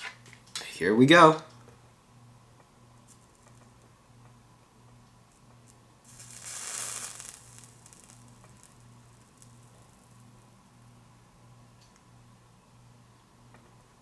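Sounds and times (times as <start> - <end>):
soldering flux sizzling: 5.3 - 11.2.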